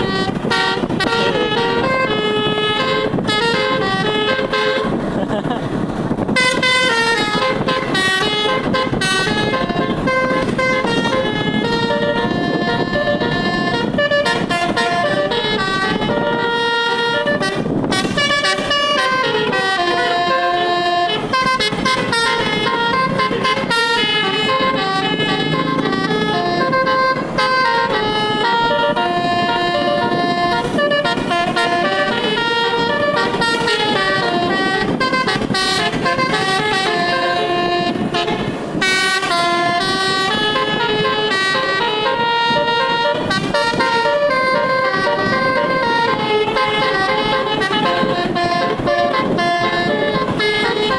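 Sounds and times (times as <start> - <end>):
multi-tone air horn melody: 0.0 - 50.9.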